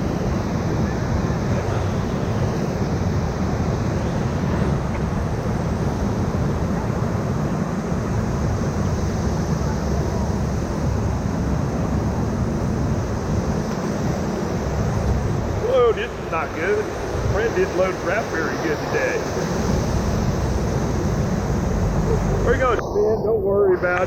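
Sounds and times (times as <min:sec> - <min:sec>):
whitewater rushing: 0:10.0 - 0:22.8.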